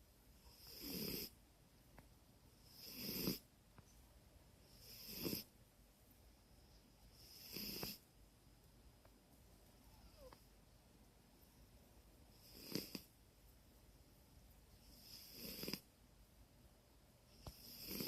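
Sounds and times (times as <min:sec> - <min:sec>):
cat snoring: 0:00.4 - 0:01.4, 0:02.6 - 0:03.5, 0:04.7 - 0:05.5, 0:07.1 - 0:08.0, 0:09.8 - 0:10.4, 0:12.3 - 0:13.1, 0:14.9 - 0:15.9, 0:17.3 - 0:18.0.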